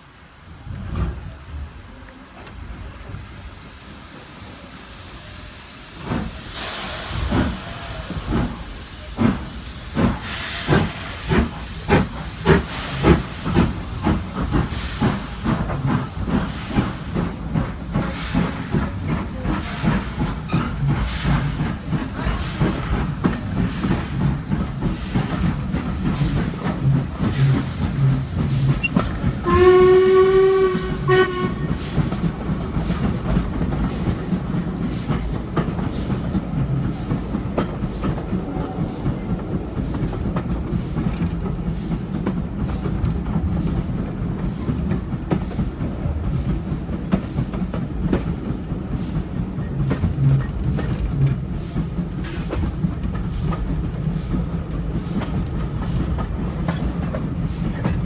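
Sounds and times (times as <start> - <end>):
steam locomotive exhaust beats: 0.0 - 58.0
steam hissing: 2.6 - 58.0.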